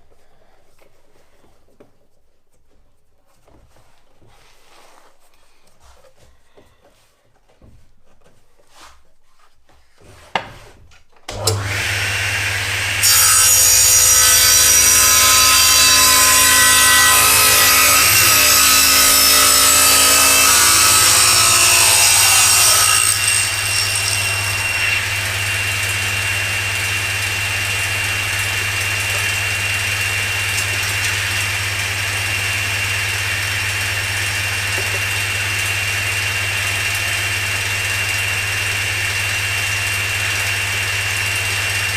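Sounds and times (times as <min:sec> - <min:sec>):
table saw cutting wood: 0:11.3 - 0:41.9
table saw running with whine: 0:11.3 - 0:41.9.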